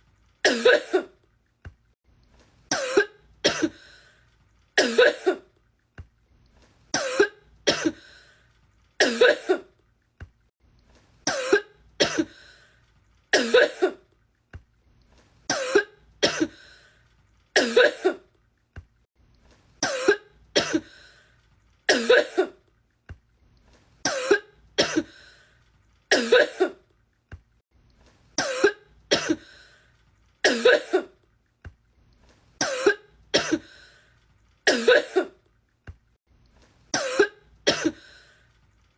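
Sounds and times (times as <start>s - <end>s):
woman coughing: 0.5s - 1.2s, 2.7s - 3.8s, 4.8s - 5.5s, 7.0s - 8.0s, 9.0s - 9.7s, 11.3s - 12.4s, 13.4s - 14.0s, 15.5s - 16.6s, 17.6s - 18.3s, 19.8s - 20.9s, 21.9s - 22.6s, 24.1s - 25.2s, 26.1s - 26.8s, 28.4s - 29.5s, 30.4s - 31.2s, 32.6s - 33.8s, 34.7s - 35.4s, 37.0s - 38.1s.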